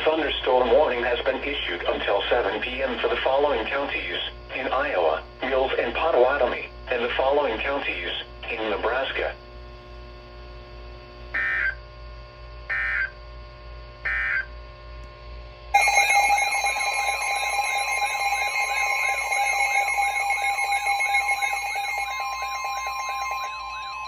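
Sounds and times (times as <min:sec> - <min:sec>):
buzzy digital data bursts: 0:15.8 - 0:24.0
warbling alert tone: 0:15.8 - 0:24.0.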